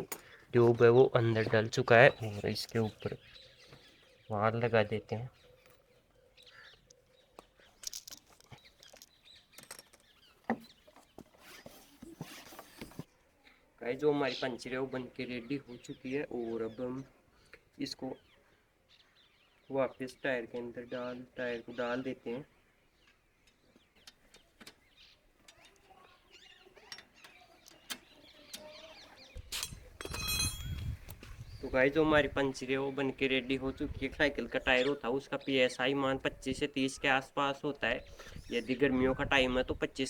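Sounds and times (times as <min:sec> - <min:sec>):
faint bird chirps: 0:01.2 - 0:31.9
rubber rubbing: 0:11.2 - 0:13.1.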